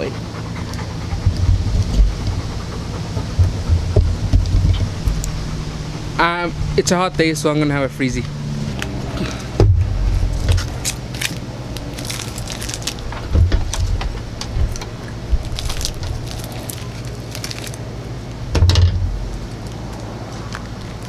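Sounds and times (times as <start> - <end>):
steady low hum: 0.0 - 21.0
low thumps: 0.8 - 6.8, 9.5 - 10.8, 13.1 - 16.2
plastic wrapper crinkling: 10.4 - 13.1, 15.4 - 17.8.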